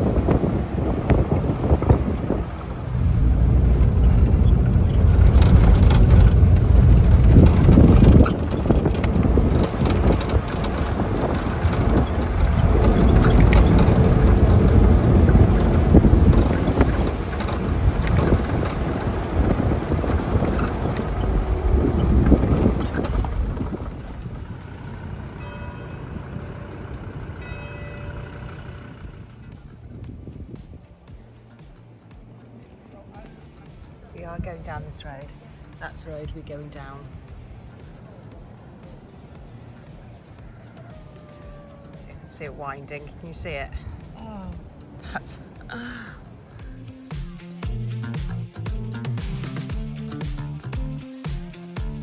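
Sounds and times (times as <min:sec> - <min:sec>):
knocks and rattles: 0:00.0 - 0:29.0
wind noise on microphone: 0:00.0 - 0:31.6, 0:34.0 - 0:38.6
vehicle engine and tyres rumbling: 0:00.0 - 0:52.0.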